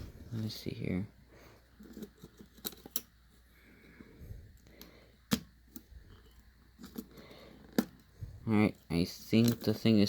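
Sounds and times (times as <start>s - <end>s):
small tools clicking and tapping: 4.6s - 8.1s.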